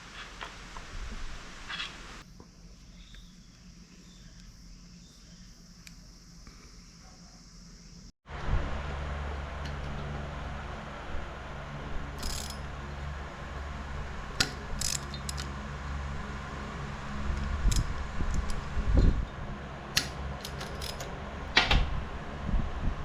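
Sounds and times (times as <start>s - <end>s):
steady low hum: 0.0s - 23.0s
metal tools clinking: 12.2s - 12.7s, 14.4s - 15.6s, 20.0s - 21.1s.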